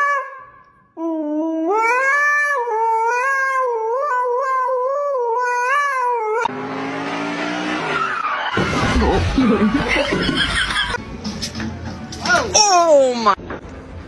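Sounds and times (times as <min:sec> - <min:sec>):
cat yowling: 0:01.7 - 0:06.5.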